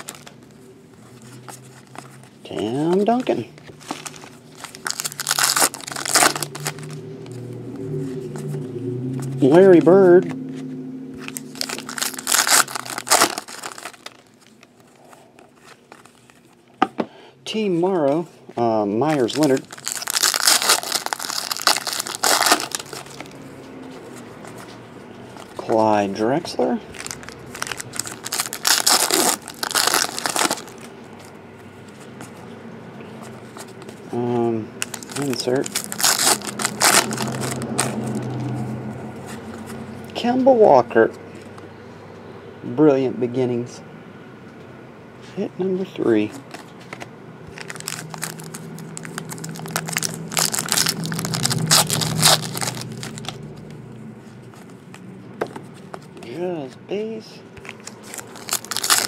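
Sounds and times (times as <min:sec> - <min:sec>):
card packaging crinkling: 0:00.0 - 0:00.6, 0:01.2 - 0:07.4, 0:11.2 - 0:16.6, 0:19.1 - 0:23.4, 0:26.9 - 0:31.3, 0:34.8 - 0:38.6, 0:46.2 - 0:53.8, 0:57.6 - 0:59.0.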